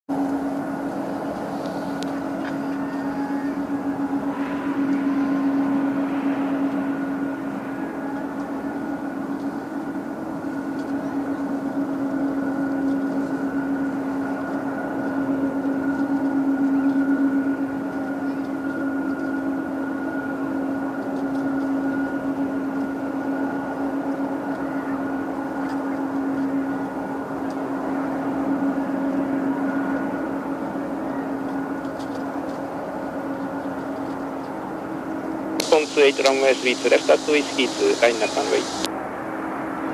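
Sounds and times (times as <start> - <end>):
rushing noise: 0.1 - 15.6, 35.6 - 39.7
jet engine high whine: 0.1 - 39.9
jet engine low hum: 0.1 - 39.9.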